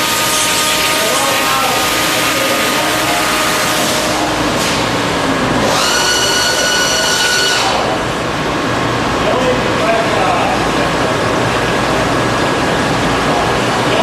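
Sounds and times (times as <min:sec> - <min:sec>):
high-pitched cutting whine: 0:00.0 - 0:09.1
milling machine cutting hiss: 0:05.6 - 0:07.9.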